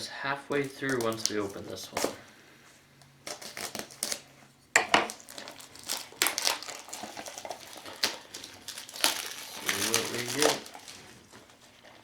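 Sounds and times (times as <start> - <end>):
cardboard and plastic crinkling: 0.5 - 2.2, 5.0 - 12.0
packaging snapping: 0.5 - 2.2, 5.1 - 11.4.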